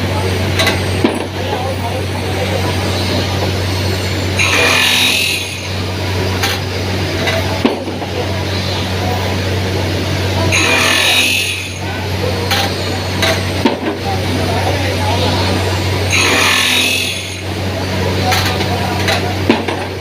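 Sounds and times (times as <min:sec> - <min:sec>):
milling machine motor hum: 0:00.0 - 0:20.0
hissing rasping noise: 0:02.0 - 0:06.8, 0:14.2 - 0:18.2.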